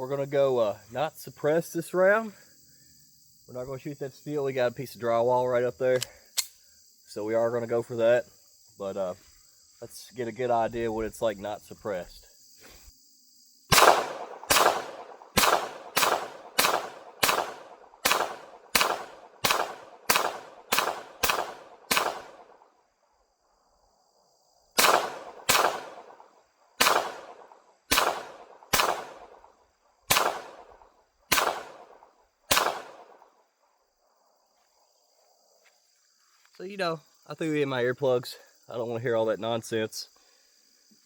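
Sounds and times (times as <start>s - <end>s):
faint insects chirping: 0.0s - 41.0s
pistol shots echoing: 13.7s - 22.7s, 24.8s - 29.5s, 30.1s - 33.2s.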